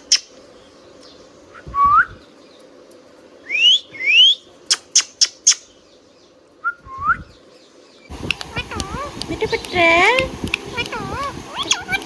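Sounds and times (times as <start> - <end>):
parrot chirping: 0.0 - 0.4, 3.5 - 5.7, 8.1 - 12.0
parrot whistling: 8.1 - 12.0.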